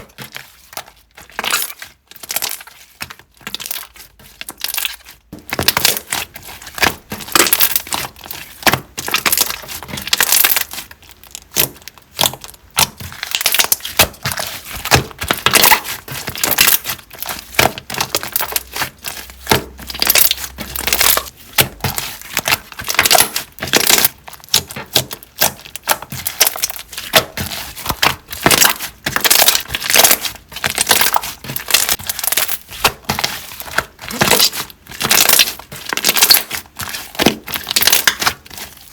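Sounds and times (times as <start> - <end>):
slime squished by hand: 0.0 - 38.9.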